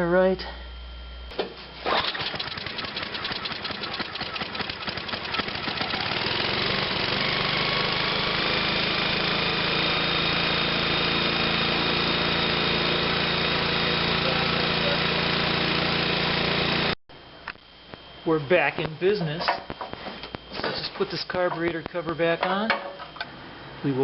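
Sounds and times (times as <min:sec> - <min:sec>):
small gas engine running: 0:01.8 - 0:17.0.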